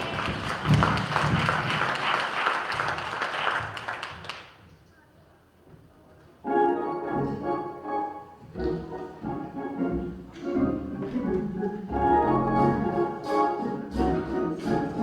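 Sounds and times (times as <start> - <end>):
congregation applauding: 0.0 - 4.6
music: 6.4 - 15.0.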